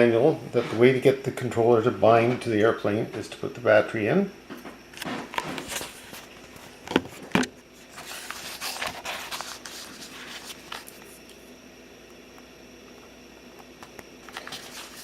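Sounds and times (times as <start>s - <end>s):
scraping and handling noise: 4.9s - 11.5s, 13.7s - 15.0s.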